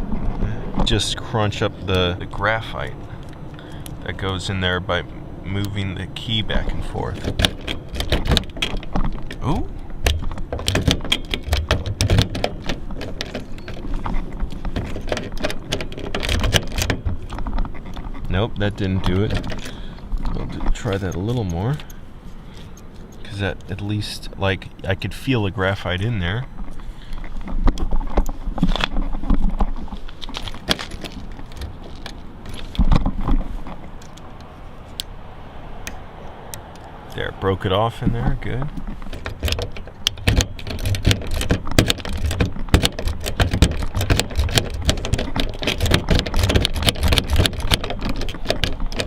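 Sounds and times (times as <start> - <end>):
key rattling in car door lock: 7.0 - 22.0, 27.8 - 34.5, 38.6 - 49.0
keyring rattling: 30.2 - 32.8, 39.1 - 49.0.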